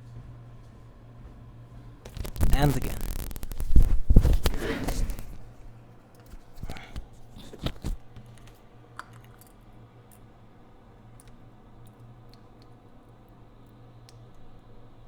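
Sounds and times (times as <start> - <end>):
steady low hum: 0.0 - 5.8.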